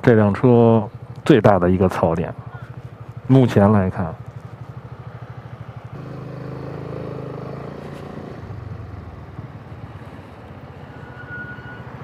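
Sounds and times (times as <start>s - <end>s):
scooter engine running: 2.3s - 10.1s
high-pitched brake squeal: 10.7s - 12.0s.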